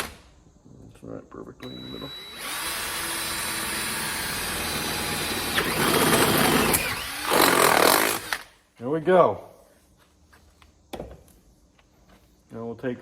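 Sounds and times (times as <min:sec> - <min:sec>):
electric drill drilling metal pipe: 0:01.6 - 0:08.4.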